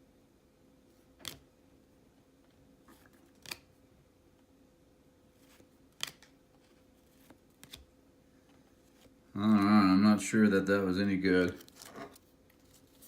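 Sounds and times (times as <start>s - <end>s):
trading card flicks: 3.4s - 3.7s, 5.9s - 6.4s.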